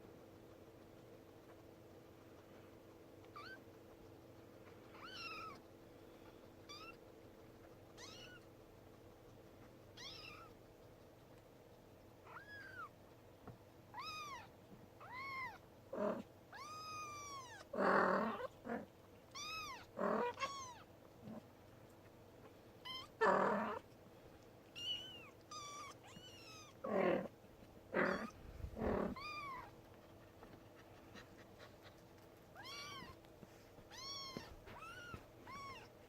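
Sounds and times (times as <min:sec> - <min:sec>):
kitten meowing: 0:03.3 - 0:03.6, 0:05.0 - 0:05.6, 0:06.6 - 0:07.0, 0:08.0 - 0:08.4, 0:10.0 - 0:10.6, 0:12.2 - 0:12.9, 0:13.9 - 0:15.6, 0:16.5 - 0:17.7, 0:19.3 - 0:20.8, 0:22.8 - 0:23.8, 0:24.8 - 0:26.8, 0:29.0 - 0:29.7, 0:32.6 - 0:33.2, 0:33.9 - 0:35.9.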